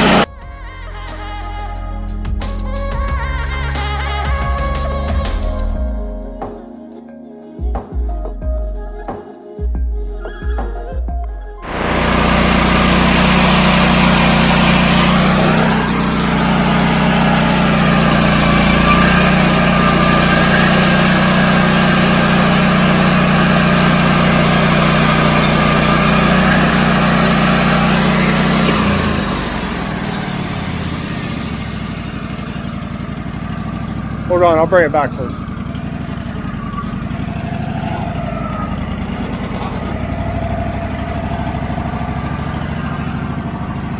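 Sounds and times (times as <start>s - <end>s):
band sawmill engine under load: 0.0s - 0.3s, 11.6s - 43.9s.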